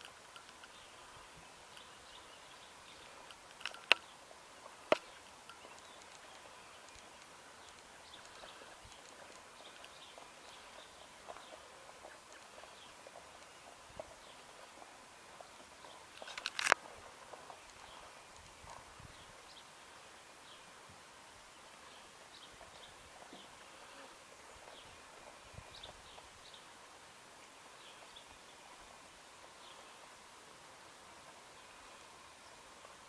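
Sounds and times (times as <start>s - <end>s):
horse hooves moving: 0.0s - 19.8s, 21.9s - 26.8s
sharp clicks: 4.9s - 10.0s.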